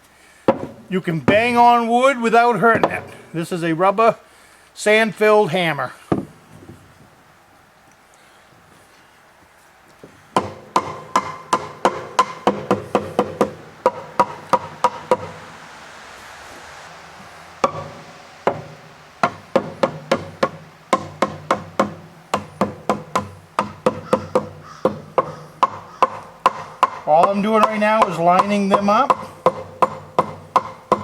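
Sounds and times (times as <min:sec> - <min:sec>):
rubber mallet striking wooden boards: 0:00.4 - 0:01.6, 0:02.7 - 0:03.2, 0:10.4 - 0:15.4, 0:17.6 - 0:31.0.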